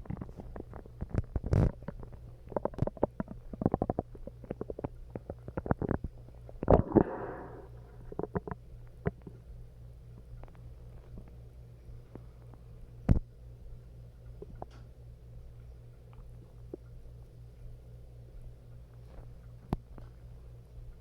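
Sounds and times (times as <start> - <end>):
stomach growling and gurgling: 0.0 - 9.5, 14.4 - 14.8.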